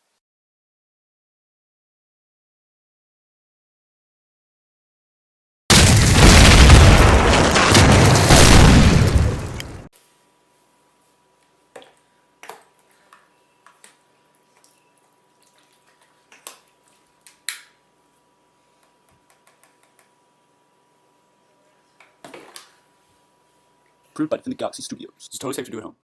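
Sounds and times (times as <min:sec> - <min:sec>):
faint high hum: 0:17.8 - 0:26.0.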